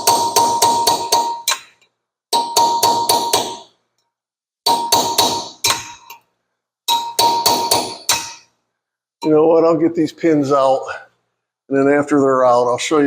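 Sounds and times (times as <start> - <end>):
hammer striking metal chisel: 0.0 - 3.8, 4.6 - 6.3, 6.9 - 8.6.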